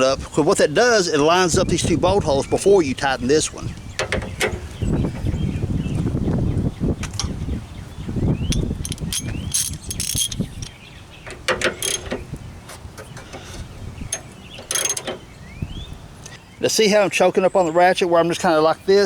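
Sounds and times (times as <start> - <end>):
metal parts knocking: 4.0 - 4.6, 8.5 - 12.3, 13.3 - 15.3
ratchet pawl clicking: 8.5 - 10.8, 11.7 - 12.2.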